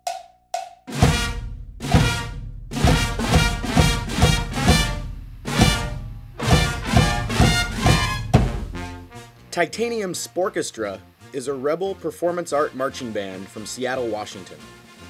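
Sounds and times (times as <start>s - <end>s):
brass and drum marching band: 0.9s - 9.4s, 14.6s - 15.0s.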